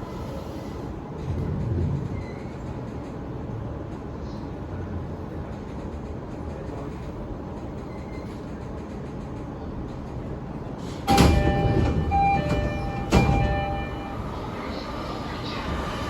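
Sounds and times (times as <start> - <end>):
standing train low rumble: 0.0 - 16.0
train doors sliding: 7.6 - 16.0
train door chime: 11.1 - 14.7.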